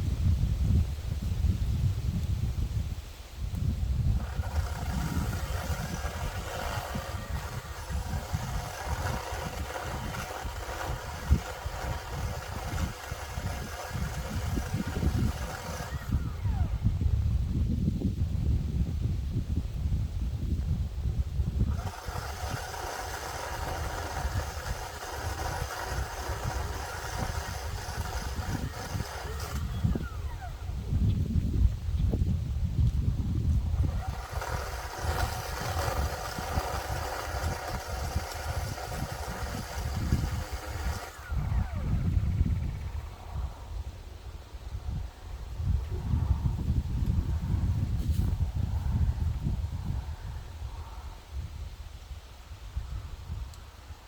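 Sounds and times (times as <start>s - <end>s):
electric chainsaw whirring: 3.6s - 17.8s, 21.3s - 31.6s, 32.7s - 50.1s.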